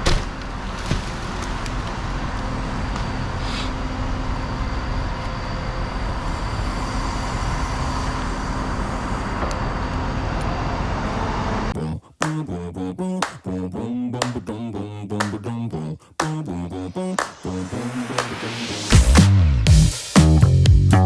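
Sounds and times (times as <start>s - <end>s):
road traffic drone: 0.0s - 11.8s, 16.2s - 20.0s.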